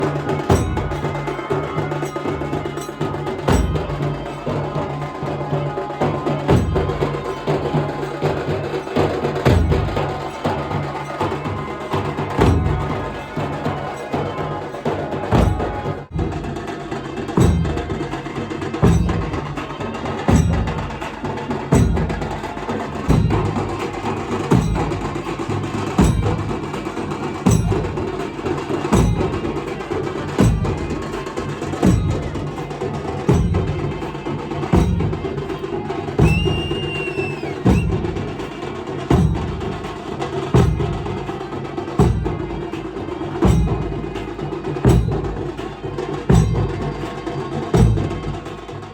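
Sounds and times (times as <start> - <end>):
dhol drums beating: 0.0 - 48.9
short high whistle: 36.2 - 38.2.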